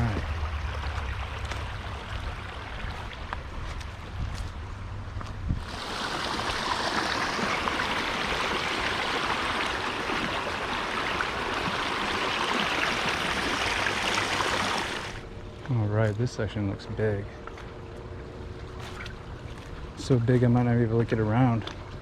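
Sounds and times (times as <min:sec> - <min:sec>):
water rushing over waterfall: 0:05.6 - 0:15.2.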